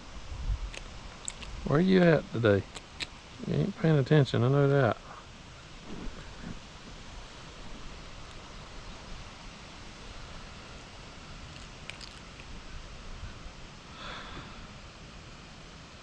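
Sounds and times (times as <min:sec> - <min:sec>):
wind noise on microphone: 0:00.0 - 0:02.4.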